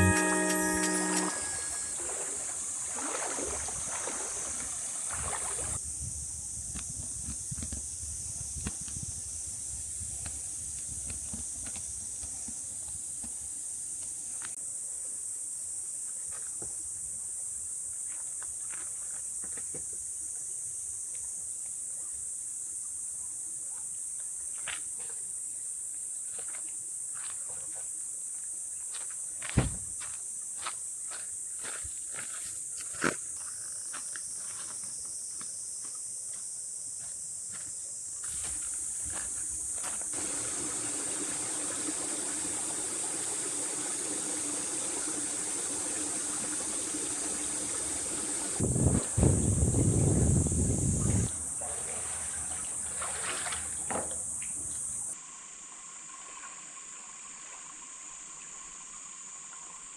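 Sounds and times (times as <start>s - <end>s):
high-pitched insect drone: 0.0s - 2.8s
crickets chirping: 0.0s - 59.9s.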